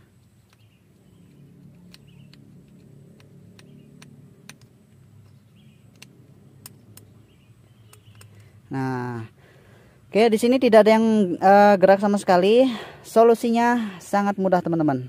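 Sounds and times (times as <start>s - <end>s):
probe tips clicking on pins: 0.0s - 8.7s.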